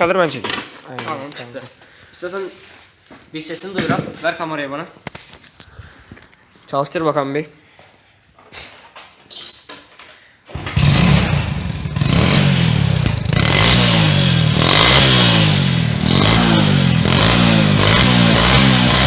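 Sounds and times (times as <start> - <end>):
motorcycle engine revving: 10.5 - 19.0.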